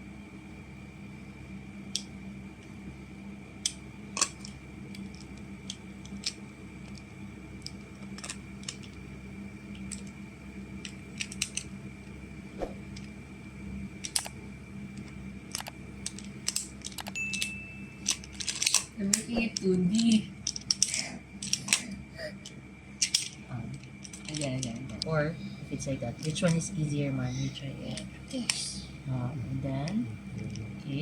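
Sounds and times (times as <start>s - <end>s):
plastic tiles clicking together: 3.6s - 9.0s, 10.8s - 11.7s, 14.0s - 14.3s, 15.0s - 25.1s.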